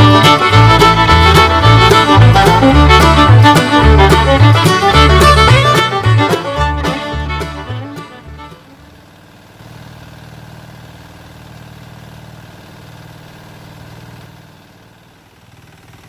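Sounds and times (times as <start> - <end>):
boat engine humming: 0.0 - 12.0.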